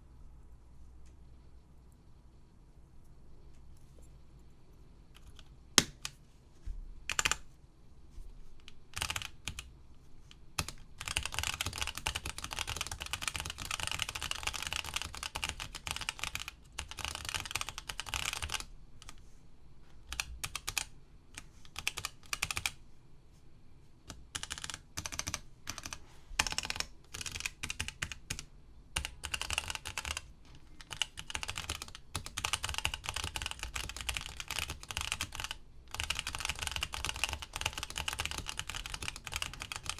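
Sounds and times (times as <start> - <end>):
keyboard typing: 5.2 - 6.2, 7.1 - 7.5, 8.6 - 9.7, 10.3 - 19.2, 20.0 - 22.8, 24.1 - 39.9.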